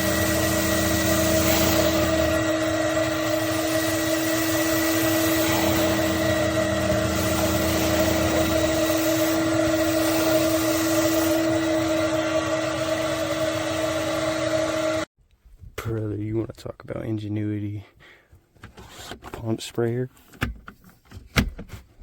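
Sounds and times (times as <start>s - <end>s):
vacuum motor whining: 0.0s - 15.1s.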